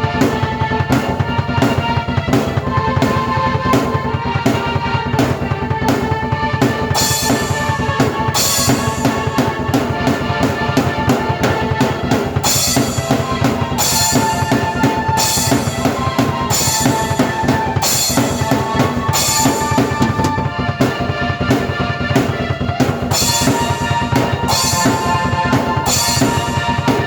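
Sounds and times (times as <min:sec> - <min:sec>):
bass drum and snare beat: 0:00.0 - 0:27.0
held keyboard notes: 0:00.0 - 0:27.0
cymbal crashes: 0:07.0 - 0:09.9, 0:12.4 - 0:20.5, 0:23.1 - 0:27.0.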